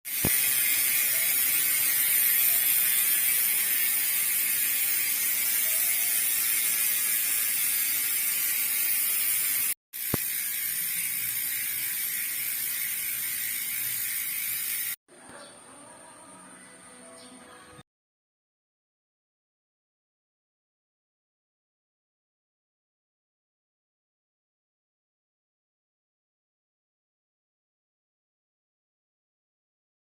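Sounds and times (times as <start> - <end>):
bicycle freehub ratchet buzzing: 0.1 - 15.0.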